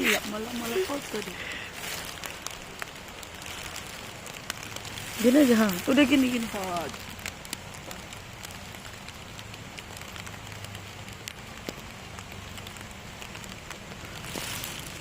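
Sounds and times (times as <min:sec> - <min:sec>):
steady rain falling: 0:00.0 - 0:15.0
drops ticking on a surface: 0:05.8 - 0:14.2.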